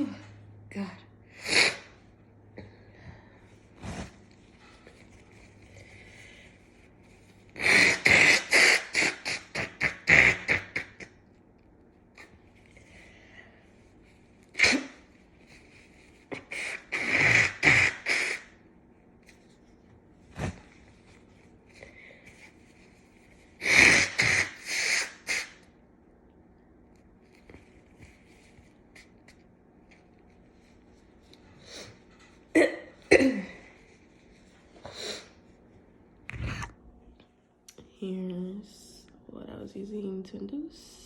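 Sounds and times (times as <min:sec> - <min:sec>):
person sneezing: 0:14.6 - 0:15.0, 0:32.6 - 0:33.8.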